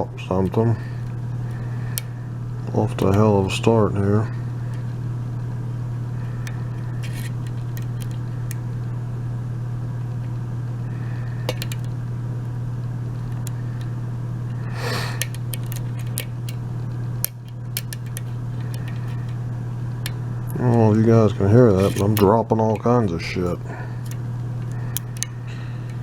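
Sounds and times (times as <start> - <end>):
steady low hum: 0.0 - 26.0
lock pick clicking: 2.9 - 3.4, 6.4 - 8.7, 11.4 - 12.0, 14.9 - 21.0, 21.7 - 26.0.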